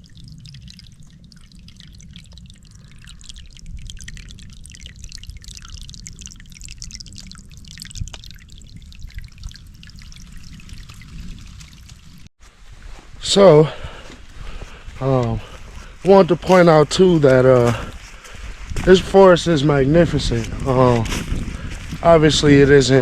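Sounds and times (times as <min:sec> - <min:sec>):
low steady rumble: 0:00.0 - 0:12.3
stream water trickling: 0:00.0 - 0:12.3, 0:13.3 - 0:23.0.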